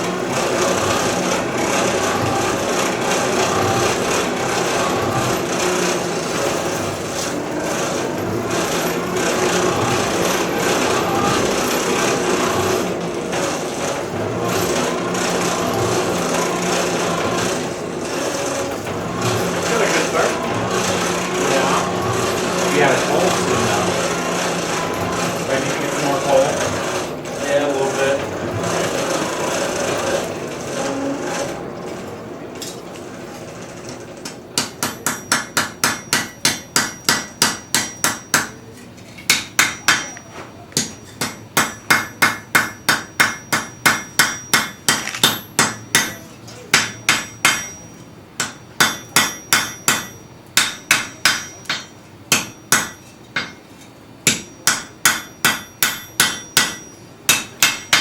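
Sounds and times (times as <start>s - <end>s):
hammer striking metal on anvil: 34.6s - 38.6s, 39.3s - 58.0s.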